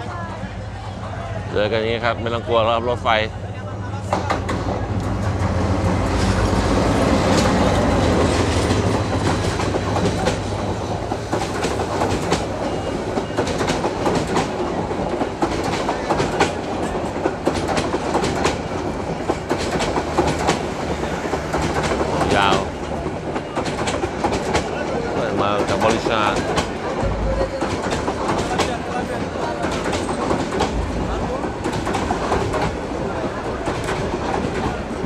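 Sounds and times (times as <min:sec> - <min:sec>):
train rumbling past: 0:00.0 - 0:35.0
wheels clacking over rail joints: 0:04.0 - 0:35.0.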